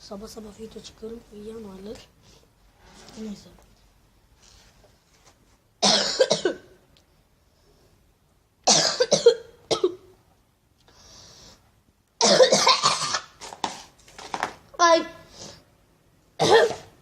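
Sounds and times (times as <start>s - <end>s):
person fake coughing: 5.8s - 6.7s, 8.7s - 10.1s, 12.2s - 13.3s, 16.4s - 16.9s.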